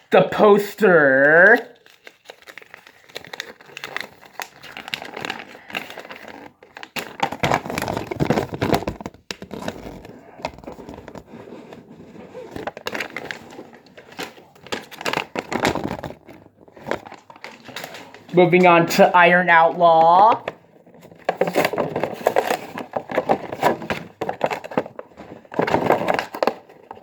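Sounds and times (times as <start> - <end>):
packaging and paper crinkling: 1.5 - 19.1, 19.7 - 27.0.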